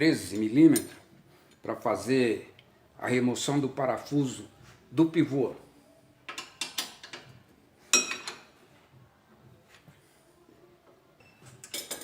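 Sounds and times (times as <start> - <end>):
wrenches clinking on metal: 11.6 - 12.0.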